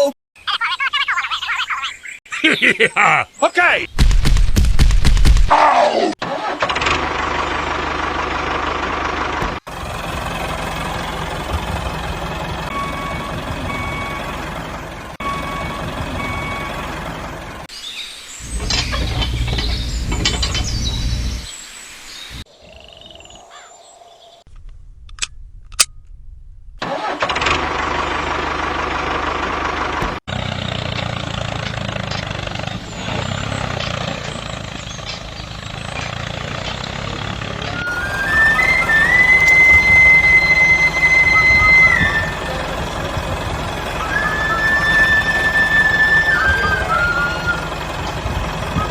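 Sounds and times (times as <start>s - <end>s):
vehicle engine running: 6.4s - 17.7s, 18.4s - 21.5s, 24.5s - 48.9s.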